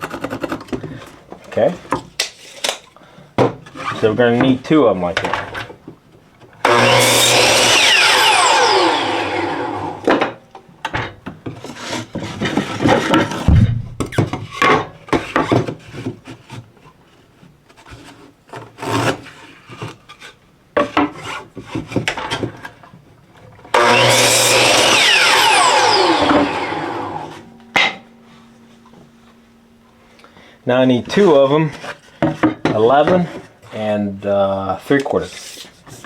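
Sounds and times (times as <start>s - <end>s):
power saw cutting wood: 6.6s - 10.4s, 23.7s - 28.0s.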